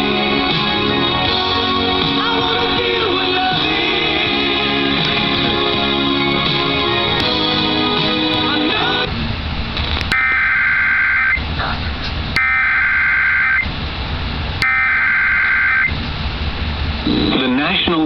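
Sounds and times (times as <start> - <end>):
music: 0.0 - 9.1
buzzy digital data tones: 10.1 - 11.4, 14.6 - 15.9.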